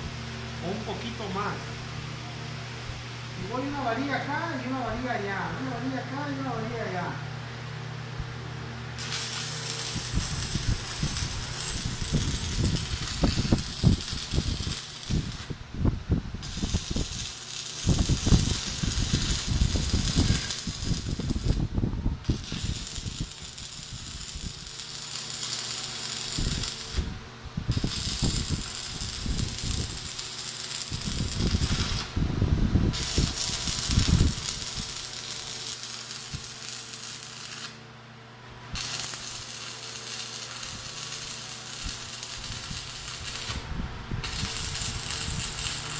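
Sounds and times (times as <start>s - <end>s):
welding arc crackling and hissing: 8.8s - 37.8s, 38.7s - 45.9s.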